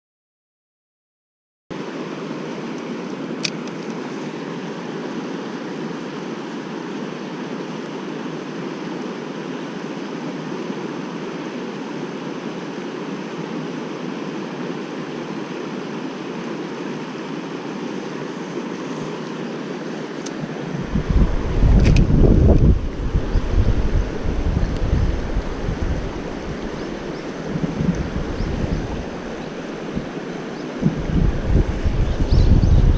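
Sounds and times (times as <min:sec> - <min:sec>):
mountain stream rushing: 0:01.8 - 0:32.9
sharp click: 0:03.4 - 0:04.0, 0:21.8 - 0:22.1.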